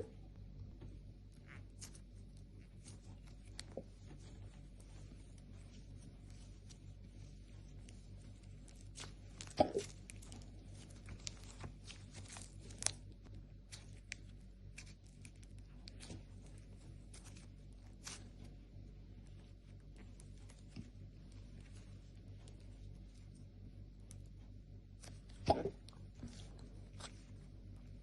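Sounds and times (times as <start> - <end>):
slime squished by hand: 1.5 - 18.5, 25.0 - 28.0.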